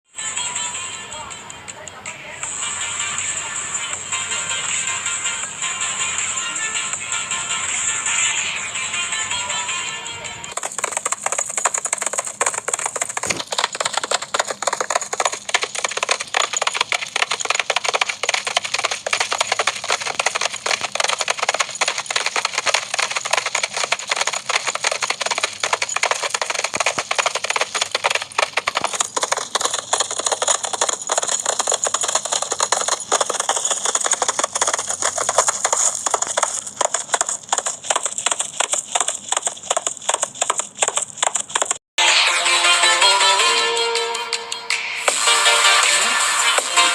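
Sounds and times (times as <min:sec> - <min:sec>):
horses hooves galloping: 0:10.5 - 0:41.8.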